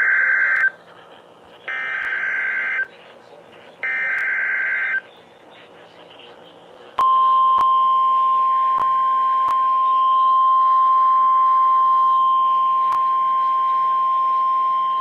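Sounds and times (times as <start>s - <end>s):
steady warning alarm tone: 1.7s - 2.9s, 3.8s - 5.0s.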